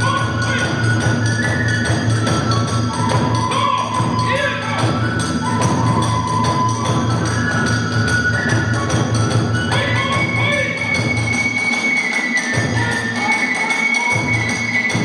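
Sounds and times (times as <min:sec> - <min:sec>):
drum beat: 0:00.0 - 0:11.4
sliding bamboo flute melody: 0:00.0 - 0:15.0.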